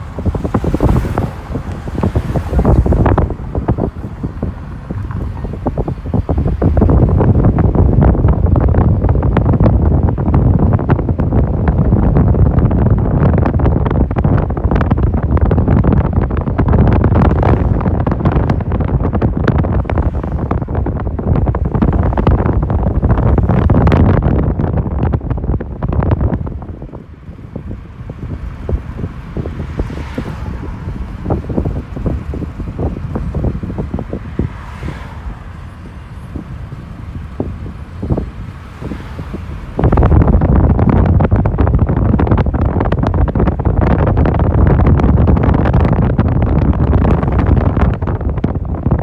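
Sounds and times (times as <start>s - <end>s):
wheels clattering on rails: 0.0s - 8.6s
wind buffeting microphone: 0.0s - 49.0s.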